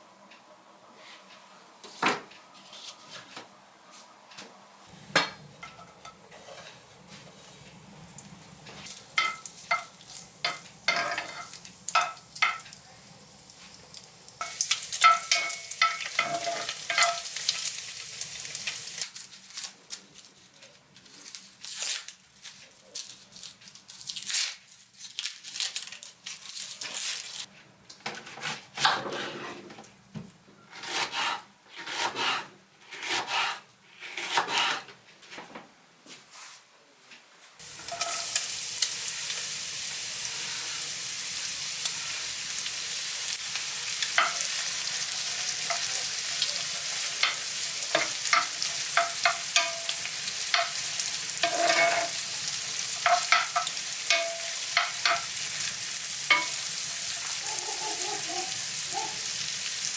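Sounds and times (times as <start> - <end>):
food sizzling in a frying pan: 4.9 - 19.7, 37.6 - 59.9
utensil stirring against pan: 8.6 - 12.8, 14.4 - 17.7, 44.0 - 59.1.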